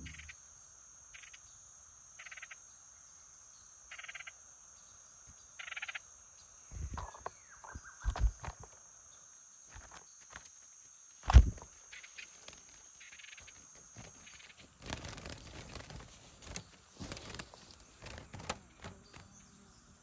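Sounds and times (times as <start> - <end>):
insects trilling: 0.0 - 20.0
horse hooves stepping and scuffing: 9.7 - 19.3.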